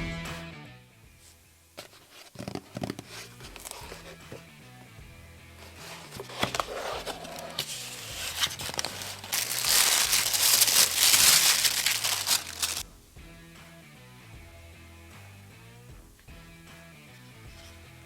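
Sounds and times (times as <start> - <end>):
background music: 0.0 - 1.4, 2.8 - 18.0
packaging crinkling and tearing: 1.8 - 4.2, 5.6 - 12.8.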